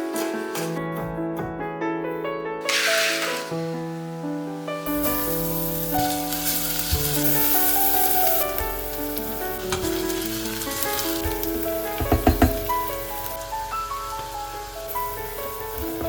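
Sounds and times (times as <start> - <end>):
food sizzling in a hot pan: 2.6 - 16.0
knocks: 12.0 - 12.8.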